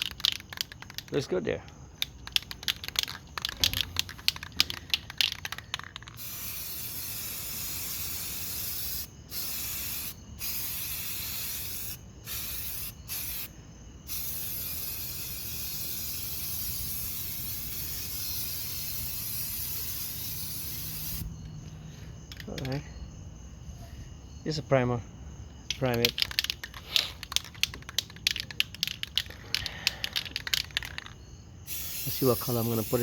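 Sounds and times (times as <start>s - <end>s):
clicks and rattles: 0.0s - 6.2s, 22.3s - 22.9s, 25.7s - 31.2s
aerosol spray can hissing: 2.4s - 13.5s, 14.1s - 21.2s, 31.7s - 33.0s.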